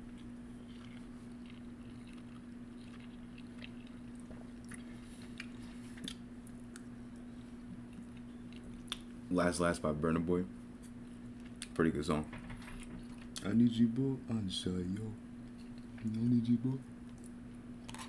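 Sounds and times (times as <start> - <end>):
person chewing food: 0.0 - 9.2.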